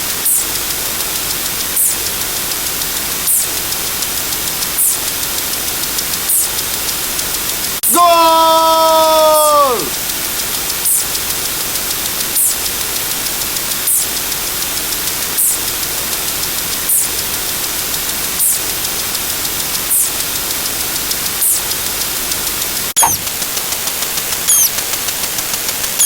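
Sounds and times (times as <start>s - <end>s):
loud static hiss: 0.0s - 26.0s
short high-pitched chirp: 23.0s - 23.3s, 24.5s - 24.7s.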